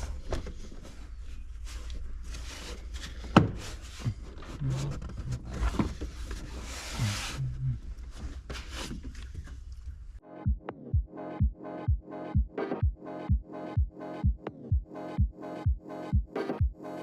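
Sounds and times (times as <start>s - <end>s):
electronic music with kick drum: 10.2s - 17.0s.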